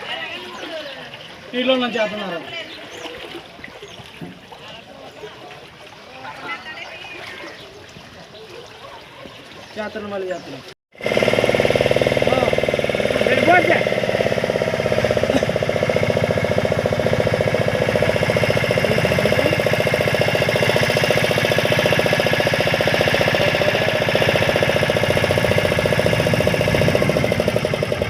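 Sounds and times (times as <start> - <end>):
engine chugging: 11.0 - 28.0.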